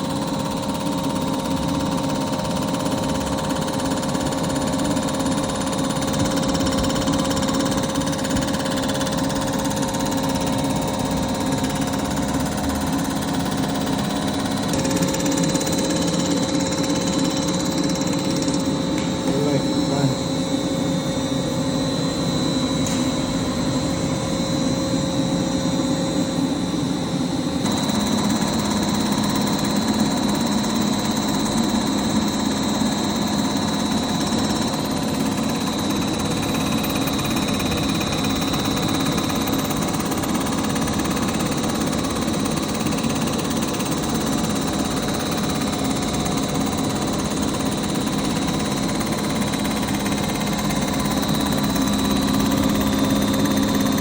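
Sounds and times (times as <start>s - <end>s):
machine tool motor humming: 0.0s - 21.3s, 27.6s - 54.0s.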